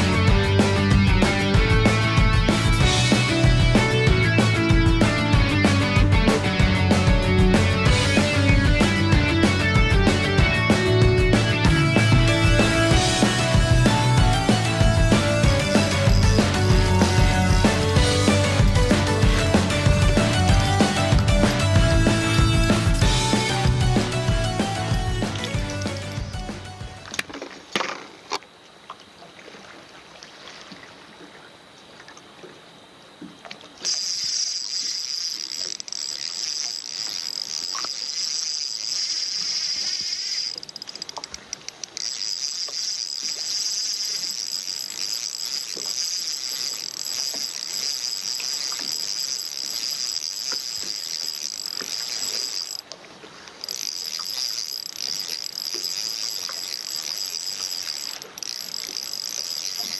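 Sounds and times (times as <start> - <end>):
insects chirping: 24.6 - 59.9
faint ticks: 33.2 - 59.9.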